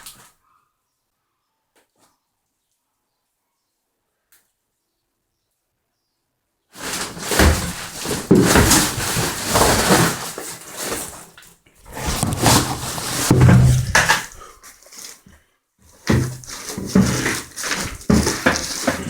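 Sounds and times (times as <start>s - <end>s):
plastic bumper thumps and clatter: 6.8s - 14.4s, 16.0s - 19.0s.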